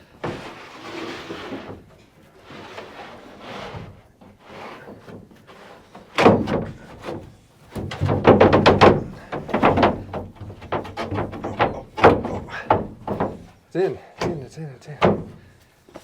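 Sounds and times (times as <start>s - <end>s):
knocks on wooden floor: 7.7s - 13.5s.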